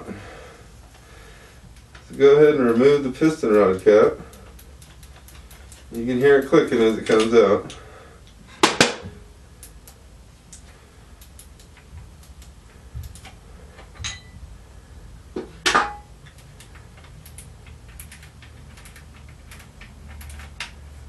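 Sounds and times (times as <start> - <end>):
small metal clicks: 1.8 - 8.4, 9.6 - 14.3, 16.2 - 20.9
metal knocks ringing: 14.0 - 14.4.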